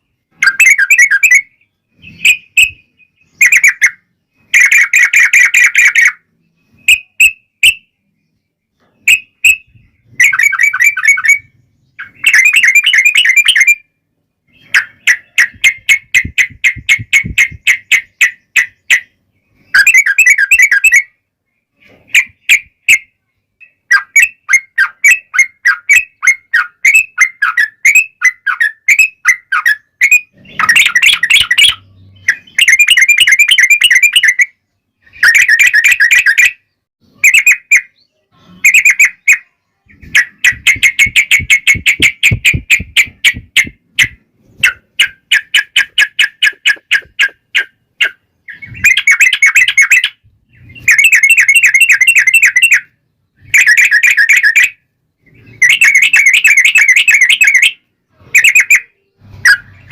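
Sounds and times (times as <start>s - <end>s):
bulbul song: 0.0s - 21.2s, 21.9s - 59.9s.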